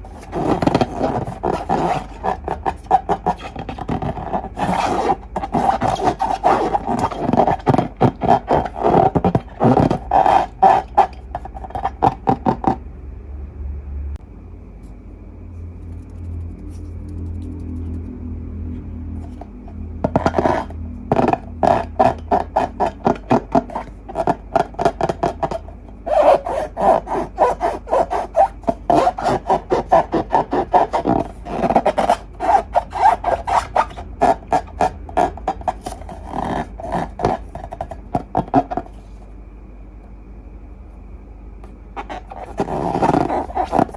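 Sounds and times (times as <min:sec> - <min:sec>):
slime squishing by hand: 0:00.0 - 0:12.8.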